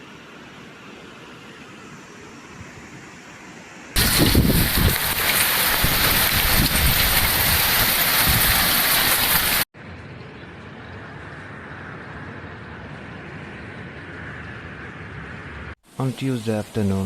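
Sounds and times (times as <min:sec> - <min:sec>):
heavy rain pounding: 0:04.0 - 0:09.7
low rumbling buffets: 0:04.0 - 0:16.2.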